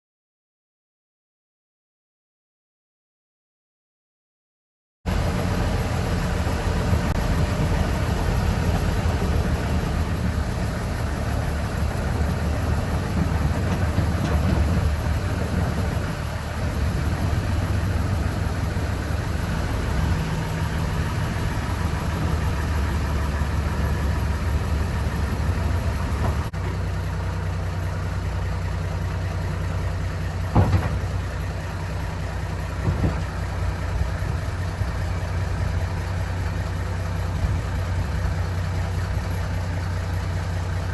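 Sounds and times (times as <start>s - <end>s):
truck engine idling: 5.1s - 40.9s
short knocks: 30.5s - 31.4s.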